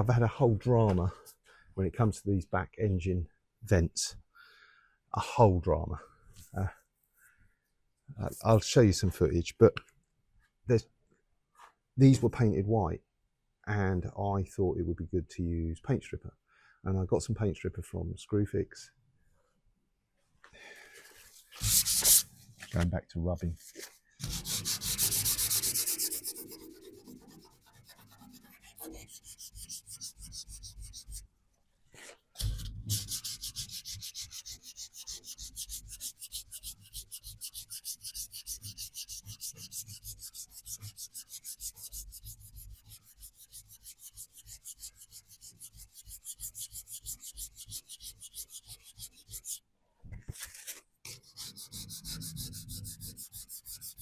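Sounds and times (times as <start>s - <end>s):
sanding metal by hand: 21.6s - 22.2s, 24.2s - 31.2s, 32.4s - 49.6s, 51.1s - 54.0s.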